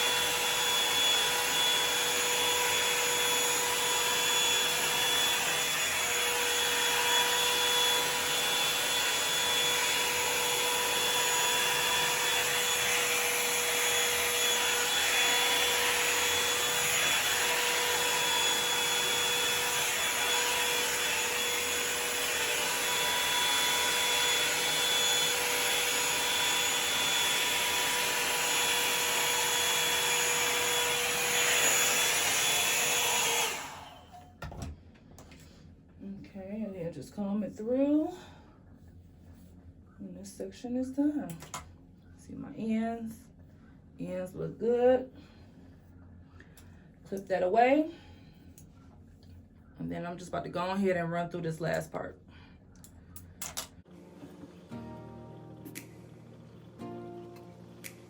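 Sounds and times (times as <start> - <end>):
hot-air brush whining: 0.0 - 34.4, 55.6 - 58.0.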